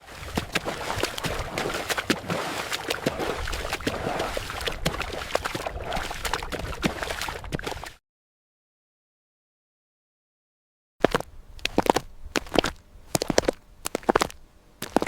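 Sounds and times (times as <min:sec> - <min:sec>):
footsteps running through mud: 0:00.0 - 0:08.0, 0:11.0 - 0:15.0.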